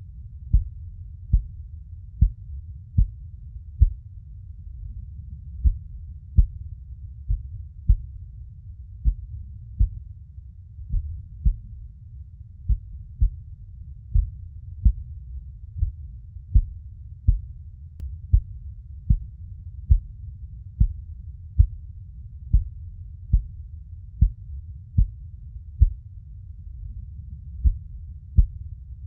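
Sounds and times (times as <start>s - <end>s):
steady low rumble: 0.0s - 29.0s
heartbeat thumps: 0.5s - 1.6s, 2.2s - 3.2s, 3.8s - 4.0s, 5.6s - 8.3s, 9.0s - 10.1s, 10.8s - 11.8s, 12.6s - 13.5s, 14.1s - 17.6s, 18.3s - 20.2s, 20.8s - 21.8s, 22.5s - 23.6s, 24.2s - 25.2s, 25.8s - 26.0s, 27.5s - 28.7s.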